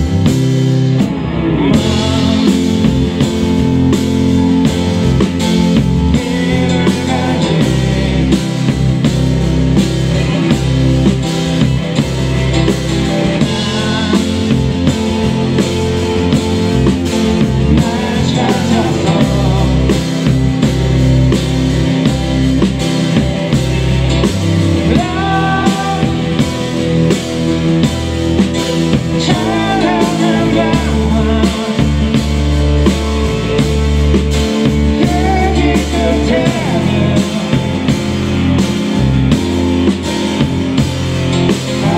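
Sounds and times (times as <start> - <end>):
rock band playing: 0.0 - 41.9
person singing: 1.1 - 3.8, 5.6 - 11.4, 12.9 - 16.2, 17.1 - 20.7, 24.7 - 27.5, 28.6 - 33.4, 34.4 - 38.9, 41.6 - 41.9.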